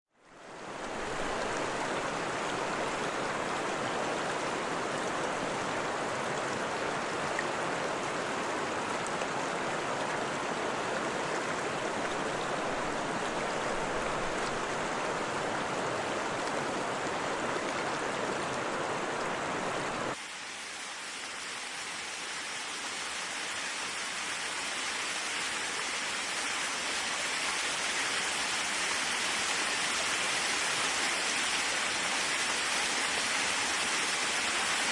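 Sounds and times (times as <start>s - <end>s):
waterfall rushing: 0.4s - 34.9s.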